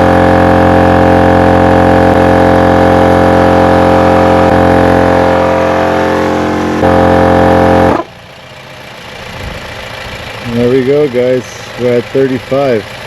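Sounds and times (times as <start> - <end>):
air compressor humming: 0.0 - 13.0.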